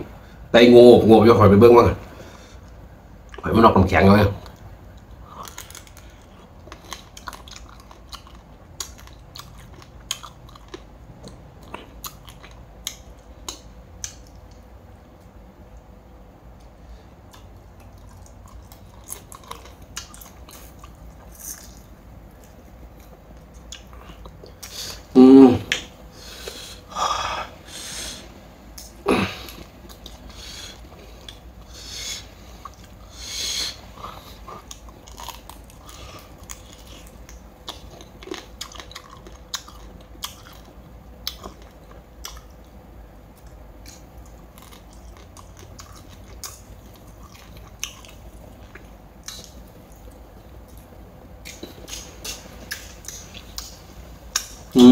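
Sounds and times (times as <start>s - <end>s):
person humming: 25.1s - 25.8s
wet chewing mouth clicks: 43.4s - 54.6s.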